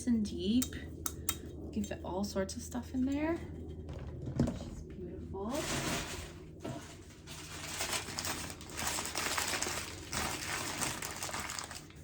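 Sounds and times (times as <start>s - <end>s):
packing paper rustling: 5.5s - 12.0s.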